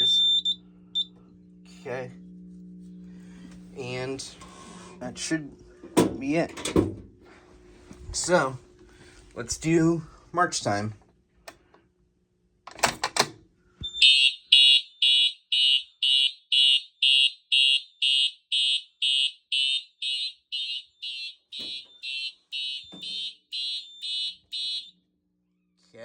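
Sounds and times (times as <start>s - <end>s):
fire alarm horn pulsing: 0.0s - 3.2s, 13.8s - 25.0s.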